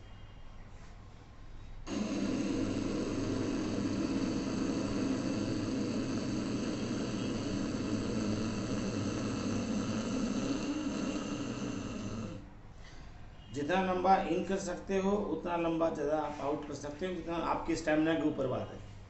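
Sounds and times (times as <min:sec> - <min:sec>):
rasping throat breathing: 0:01.9 - 0:12.6.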